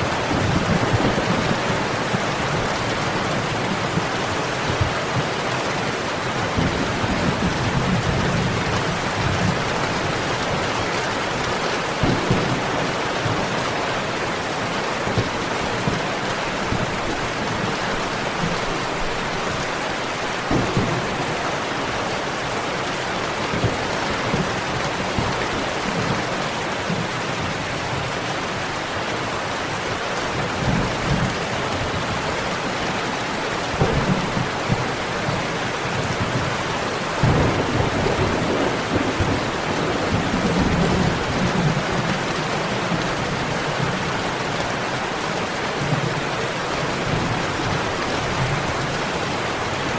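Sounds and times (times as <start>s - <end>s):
thunder rumbling: 0.0s - 5.3s, 6.4s - 14.2s, 15.0s - 26.3s, 33.6s - 44.2s
steady rain falling: 0.0s - 49.9s.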